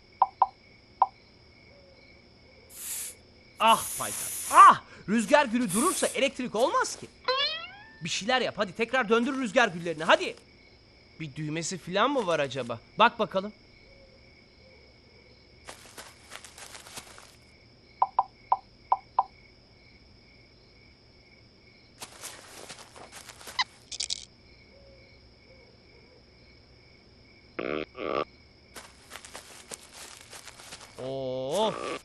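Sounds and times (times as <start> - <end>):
crickets chirring: 0.0 - 32.0
short bursts of noise: 2.7 - 4.6
cartoon sound effects: 7.3 - 8.1.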